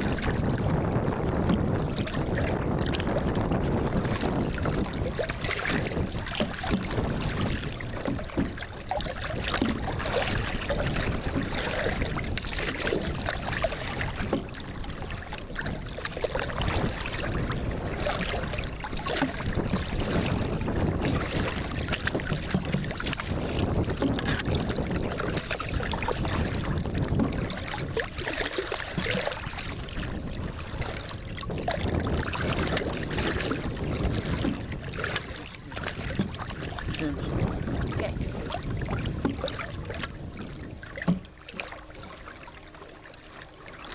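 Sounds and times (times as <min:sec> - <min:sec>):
water splashing from paddling: 0:00.0 - 0:43.9
wind on microphone: 0:00.0 - 0:43.9.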